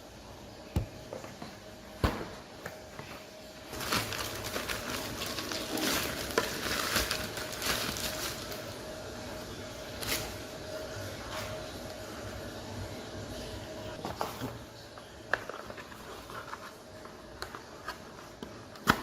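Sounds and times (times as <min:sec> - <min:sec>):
packaging crinkling: 0:03.6 - 0:08.8.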